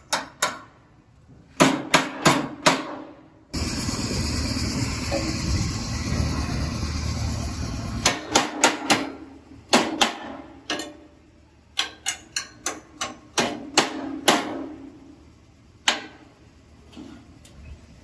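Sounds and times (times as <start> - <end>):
steady rushing noise: 3.6 - 8.3.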